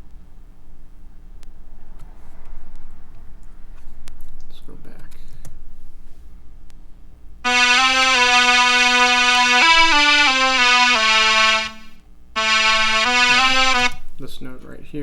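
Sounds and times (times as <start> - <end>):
bright keyboard notes: 7.4 - 14.0.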